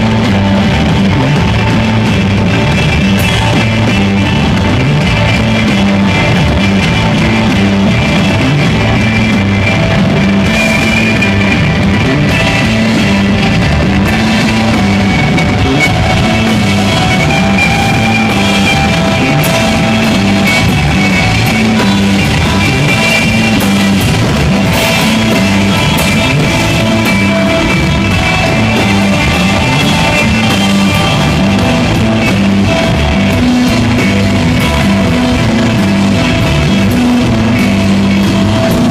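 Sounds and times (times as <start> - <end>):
drum kit: 0.0 - 38.9
electric guitar: 0.0 - 38.9
repeating bass line: 0.0 - 38.9.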